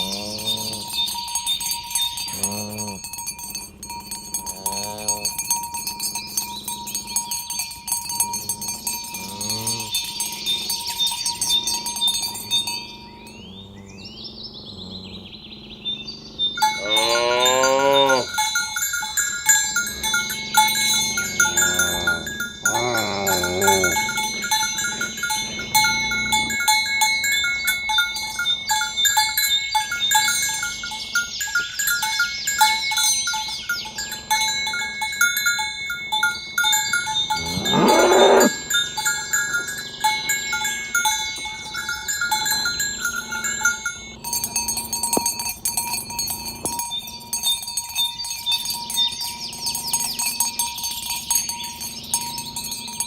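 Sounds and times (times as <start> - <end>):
cattle mooing: 0.0 - 1.2, 2.2 - 3.2, 3.8 - 5.6, 8.2 - 18.6, 19.5 - 27.1, 36.2 - 44.9
high-pitched ringing and chiming: 0.0 - 14.0, 16.0 - 53.0.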